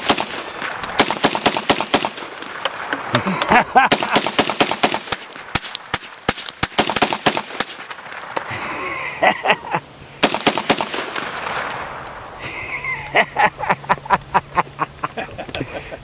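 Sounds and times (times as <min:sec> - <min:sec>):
rapid gunshots: 0:00.0 - 0:02.6, 0:03.8 - 0:08.1, 0:10.2 - 0:11.4.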